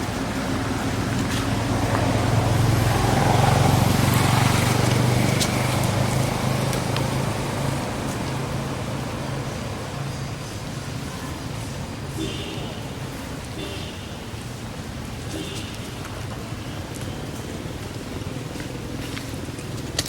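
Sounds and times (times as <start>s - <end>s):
vehicle passing by: 0.0s - 12.1s.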